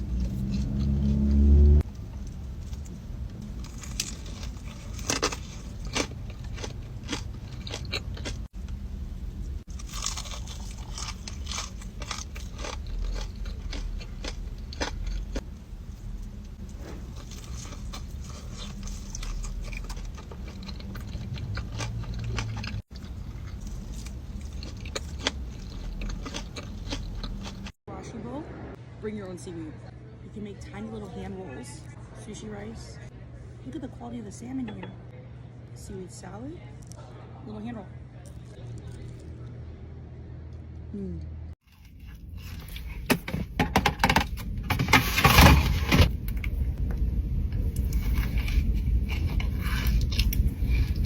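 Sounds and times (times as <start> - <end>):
crunchy eating: 2.1 - 8.8, 9.4 - 27.8, 38.2 - 39.6, 41.6 - 43.3, 47.6 - 51.0.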